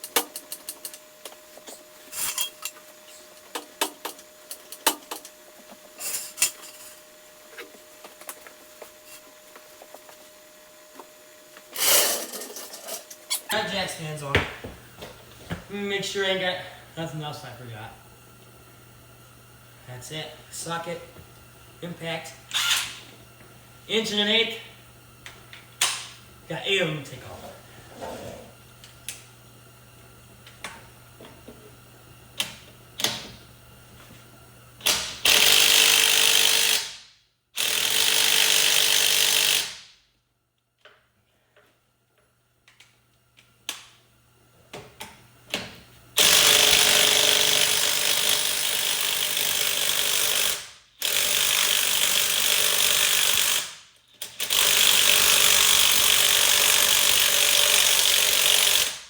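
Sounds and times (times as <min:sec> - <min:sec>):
impact wrench hammering lug nuts: 0:46.2 - 0:59.0.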